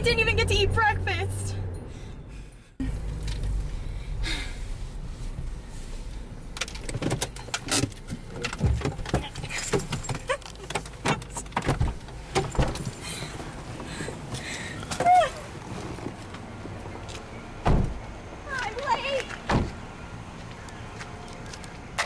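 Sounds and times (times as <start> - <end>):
keys jangling: 6.6 - 11.6.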